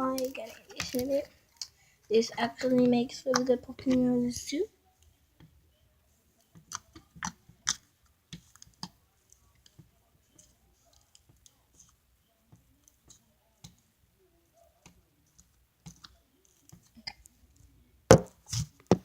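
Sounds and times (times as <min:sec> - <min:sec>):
slime clicking and popping: 0:00.0 - 0:01.7, 0:06.6 - 0:09.0.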